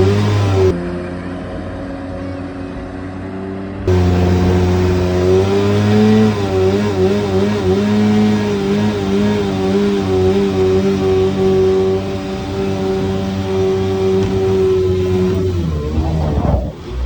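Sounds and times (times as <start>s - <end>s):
jet boat engine running: 0.0s - 0.8s, 3.9s - 17.0s.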